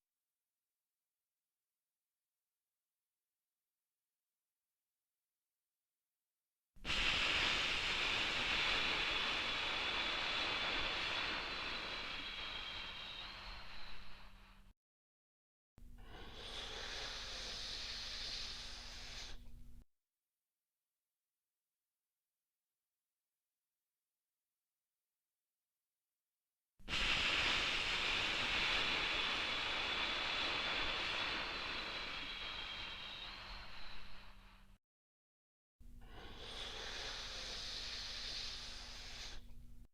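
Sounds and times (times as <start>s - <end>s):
breathy exhale hiss: 6.8s - 14.7s, 15.9s - 19.8s, 26.9s - 34.8s, 35.9s - 39.7s.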